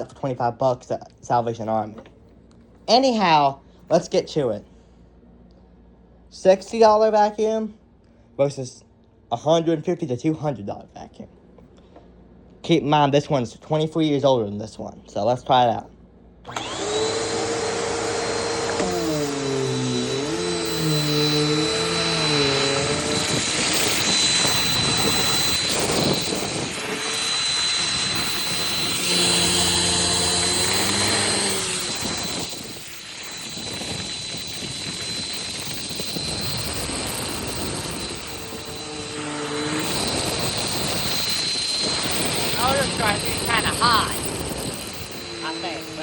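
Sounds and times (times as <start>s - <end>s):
vacuum cleaner running: 16.4s - 46.0s.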